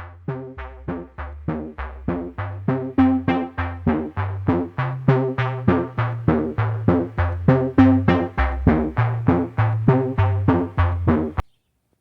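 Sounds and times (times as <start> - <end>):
stepping bass line: 0.0 - 11.4
quick plucked notes: 3.0 - 4.2, 7.8 - 8.6.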